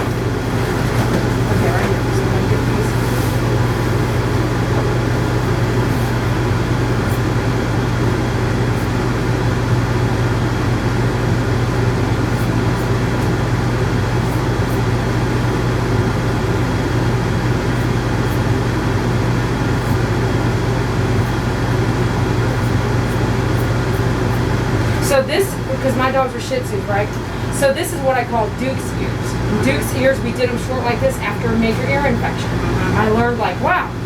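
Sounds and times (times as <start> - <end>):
electric clippers humming: 11.4 - 25.7.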